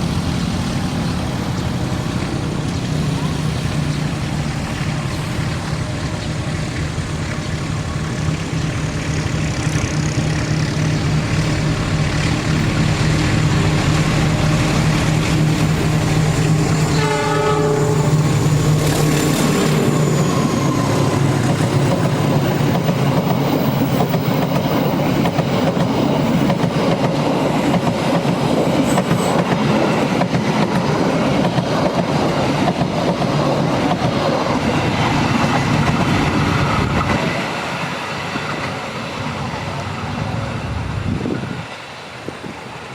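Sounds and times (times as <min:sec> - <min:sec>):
locomotive engine running: 0:00.0 - 0:41.2
train horn blast: 0:16.6 - 0:19.8.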